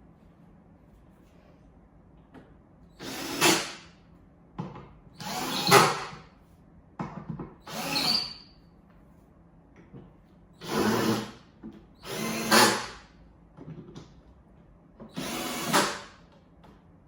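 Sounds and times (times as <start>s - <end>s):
power drill driving screws: 3.0s - 3.8s, 5.2s - 6.1s, 7.7s - 8.4s, 10.6s - 11.3s, 12.0s - 13.0s, 15.1s - 16.1s.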